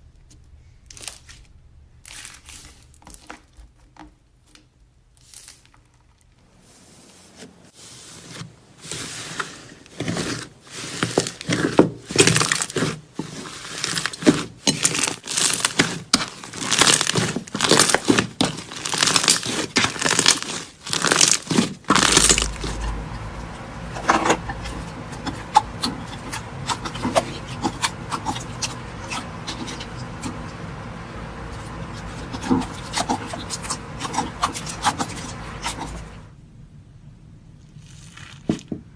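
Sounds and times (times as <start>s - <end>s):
slime squishing and crackling: 8.8s - 30.8s, 31.4s - 36.2s, 37.6s - 38.7s.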